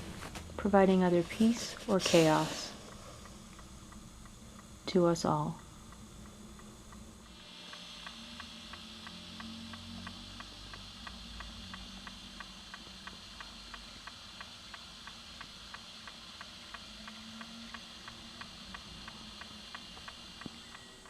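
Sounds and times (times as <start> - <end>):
constant hiss: 0.0 - 21.0
steady ticking: 8.0 - 21.0.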